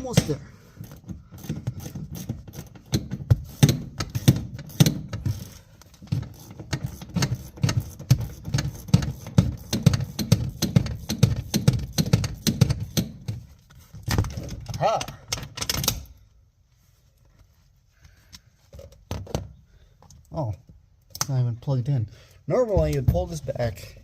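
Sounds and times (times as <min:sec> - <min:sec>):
ratchet wrench clicking: 0:00.8 - 0:13.2.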